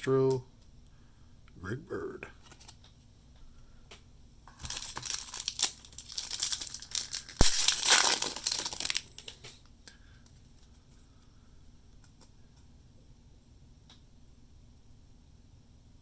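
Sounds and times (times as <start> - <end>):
foil wrapper tearing and crinkling: 4.5 - 9.6.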